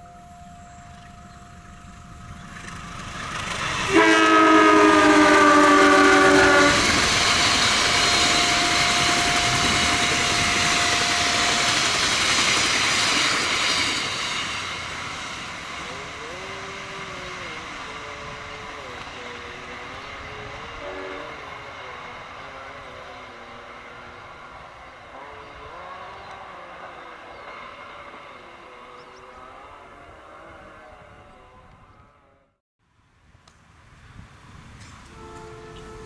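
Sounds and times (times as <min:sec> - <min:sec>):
train rushing past: 0:00.0 - 0:32.4
train horn: 0:03.7 - 0:12.5, 0:15.8 - 0:32.6, 0:35.0 - 0:36.0.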